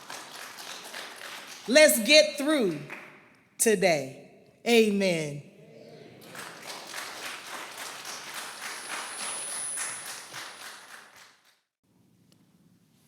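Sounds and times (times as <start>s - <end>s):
congregation applauding: 0.0s - 2.0s, 2.7s - 3.1s, 6.1s - 11.6s.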